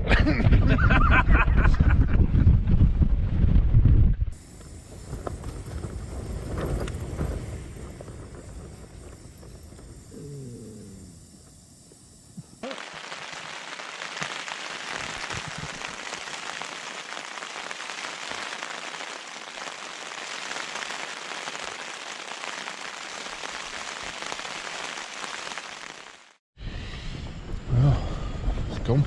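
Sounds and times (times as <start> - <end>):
heavy rain on a tent: 4.4 - 9.7, 12.6 - 26.4.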